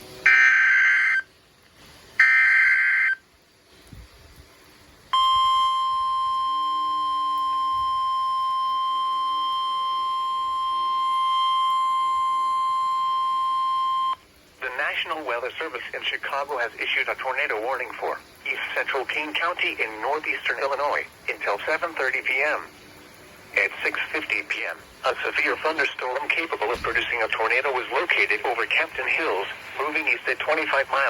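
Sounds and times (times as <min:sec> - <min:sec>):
screeching digital code bursts: 0:00.3 - 0:01.3
steady attention tone: 0:05.2 - 0:14.2.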